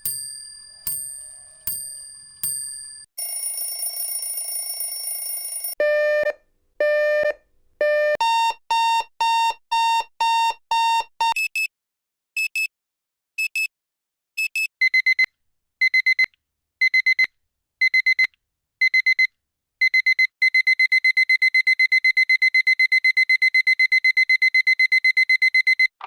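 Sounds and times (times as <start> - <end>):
clock bell striking: 0.0 - 4.1
alarm clock bell ringing: 0.0 - 5.8
electronic alarm clock beeping: 0.0 - 5.8, 14.5 - 25.9.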